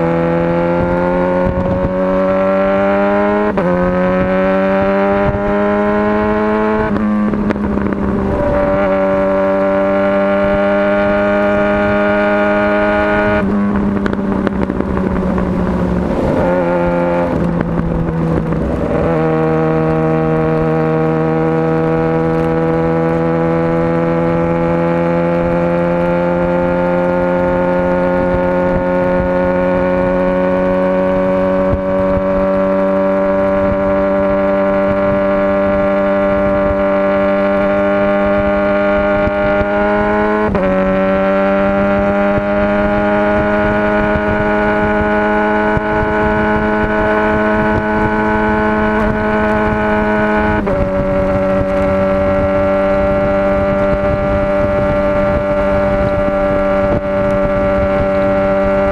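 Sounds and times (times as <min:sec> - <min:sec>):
motorcycle engine running: 0:00.0 - 0:58.9.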